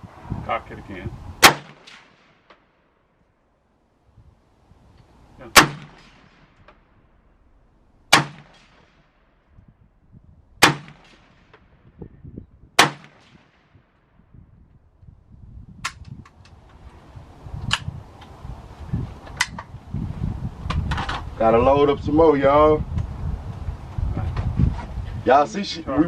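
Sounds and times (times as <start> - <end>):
rifle shots with echo: 1.4 - 2.7, 5.5 - 7.0, 8.1 - 9.4, 10.6 - 11.8, 12.8 - 14.0.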